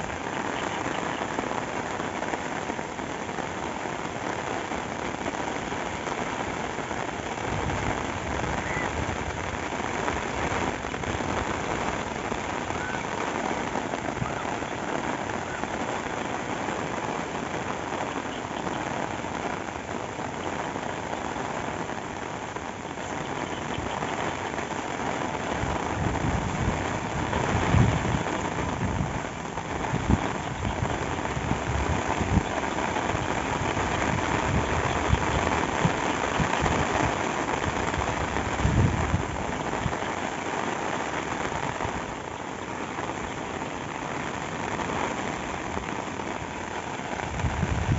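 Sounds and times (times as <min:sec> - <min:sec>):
rain pattering: 0:00.0 - 0:47.9.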